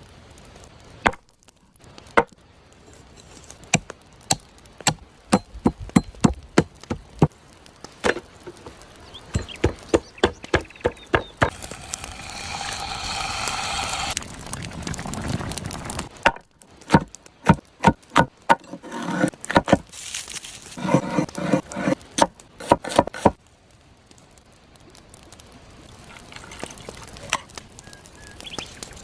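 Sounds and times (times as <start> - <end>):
steady hissing: 7.0 - 15.2.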